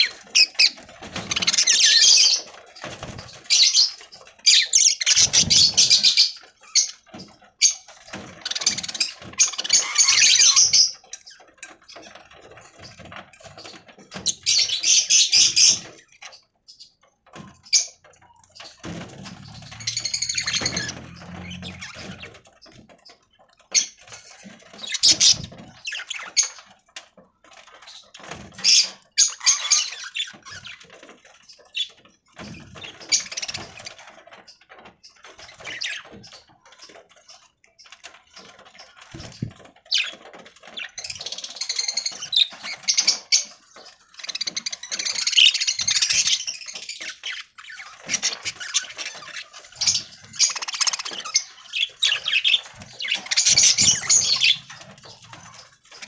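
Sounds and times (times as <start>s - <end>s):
budgies chattering and squawking: 0.0s - 16.9s, 17.7s - 26.6s, 27.6s - 56.0s.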